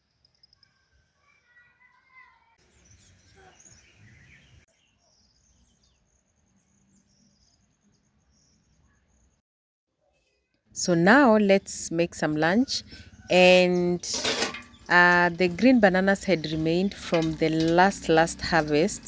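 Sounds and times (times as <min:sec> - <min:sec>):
birds chirping: 0:02.6 - 0:09.4, 0:10.8 - 0:19.0.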